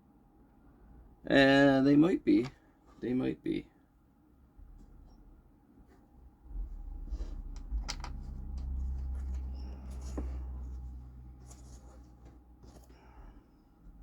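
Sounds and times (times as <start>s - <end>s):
low rumble: 6.2s - 11.9s.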